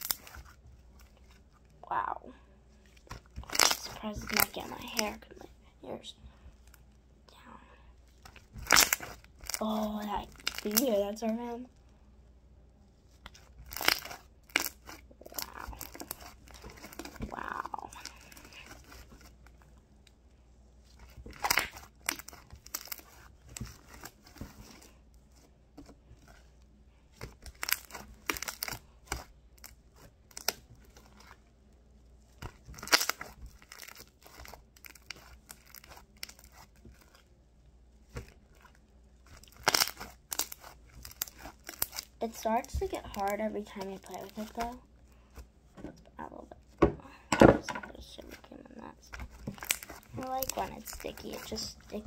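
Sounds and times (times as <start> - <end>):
slime crackling and popping: 0.0 - 1.2, 3.0 - 5.2, 8.2 - 11.6, 13.2 - 19.6, 20.9 - 24.9, 27.2 - 31.4, 32.3 - 37.3, 38.0 - 44.8, 49.0 - 52.0.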